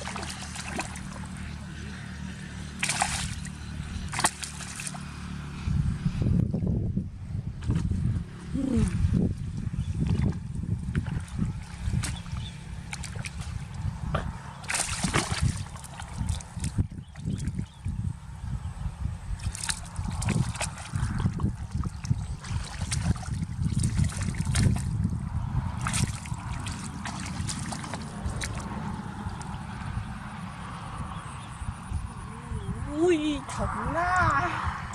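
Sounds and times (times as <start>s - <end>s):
water splashing and sloshing: 0.0s - 5.4s, 7.6s - 18.0s, 19.3s - 31.4s.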